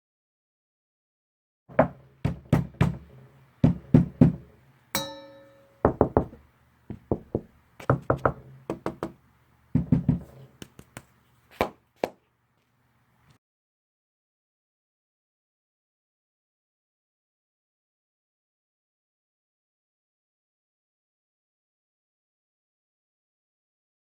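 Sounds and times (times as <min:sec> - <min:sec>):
knocking on a door: 0:01.7 - 0:04.5, 0:05.8 - 0:09.2, 0:09.8 - 0:10.4.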